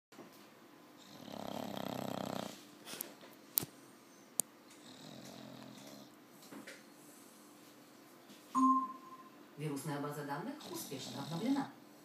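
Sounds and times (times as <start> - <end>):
dog snoring: 1.0 - 2.6, 4.8 - 6.2, 10.6 - 11.8.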